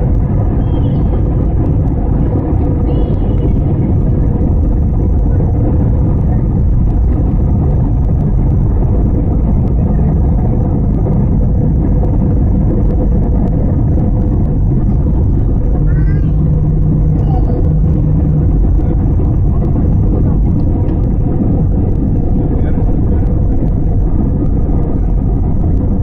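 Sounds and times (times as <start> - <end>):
faint steady hum: 0.0 - 26.0
jet engines rumbling: 0.0 - 26.0
rushing air: 0.0 - 26.0.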